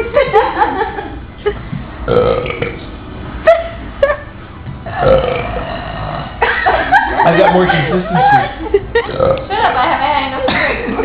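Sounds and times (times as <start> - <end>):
loud belches: 2.1 - 2.8, 4.9 - 6.4, 9.1 - 9.5.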